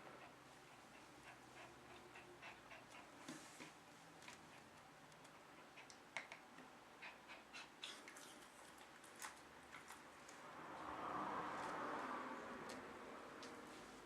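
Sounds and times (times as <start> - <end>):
faint room hiss: 0.0 - 14.0.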